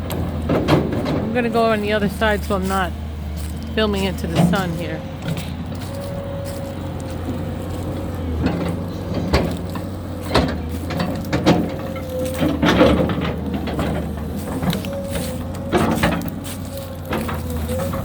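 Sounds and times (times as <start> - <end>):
constant whine: 0.0 - 18.0
heavy machine engine running: 0.0 - 18.0
sharp knocks and clanks: 0.0 - 18.0.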